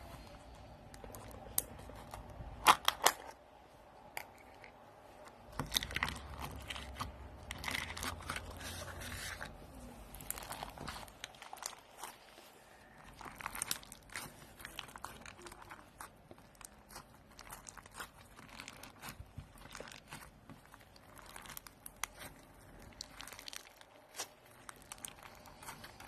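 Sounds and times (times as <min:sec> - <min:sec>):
packaging crinkling and tearing: 0:05.6 - 0:26.0.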